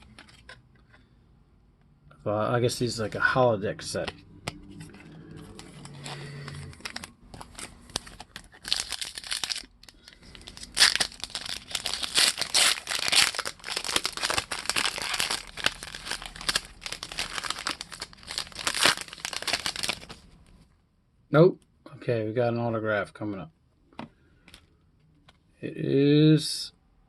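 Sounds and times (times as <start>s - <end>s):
card pack wrapper crinkling and tearing: 4.0s - 20.4s.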